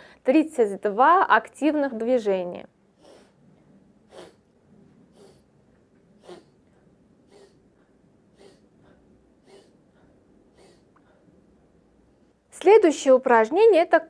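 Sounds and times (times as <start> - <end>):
person sniffing sharply: 3.0 - 3.4, 4.1 - 4.4, 5.1 - 5.5, 6.2 - 6.6, 7.3 - 11.3.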